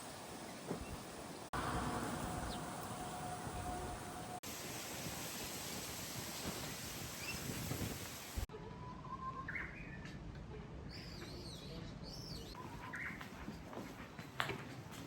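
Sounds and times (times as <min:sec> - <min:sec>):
steady hiss: 0:00.0 - 0:08.5
birds chirping: 0:00.1 - 0:04.4.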